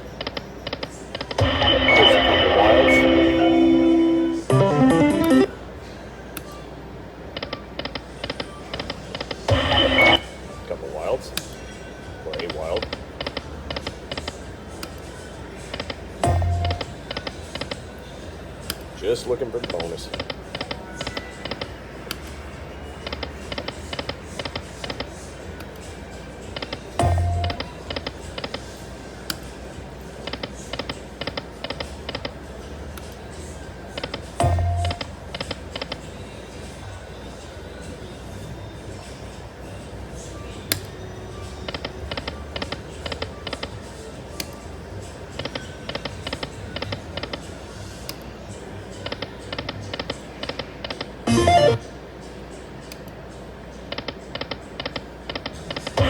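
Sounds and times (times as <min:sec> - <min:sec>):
slot machine reel clicks: 0:01.2 - 0:05.5, 0:51.3 - 0:51.8
slot machine background music: 0:01.3 - 0:05.6, 0:08.9 - 0:11.4, 0:15.7 - 0:17.8, 0:26.8 - 0:28.2, 0:34.4 - 0:35.2, 0:51.1 - 0:52.2.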